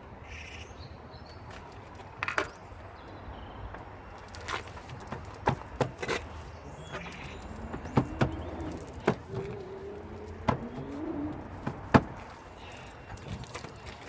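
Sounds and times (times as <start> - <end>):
sharp clicks and knocks: 3.8 - 9.6.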